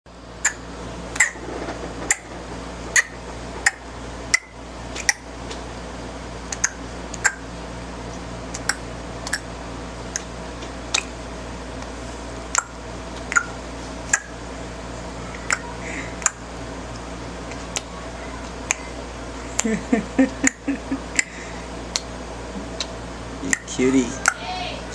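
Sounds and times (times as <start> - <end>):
steady low hum: 0.1 - 24.9
child's tongue clicks: 6.5 - 7.4, 8.5 - 9.4.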